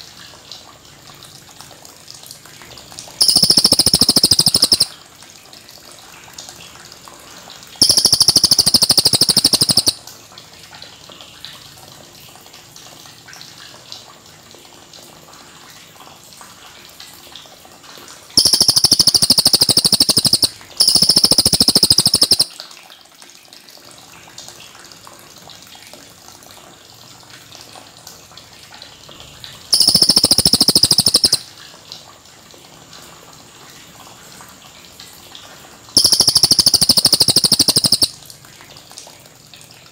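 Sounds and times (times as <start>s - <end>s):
bird singing trilled phrases: 3.2s - 4.9s, 7.8s - 10.0s, 18.4s - 22.5s, 29.7s - 31.4s, 36.0s - 38.2s.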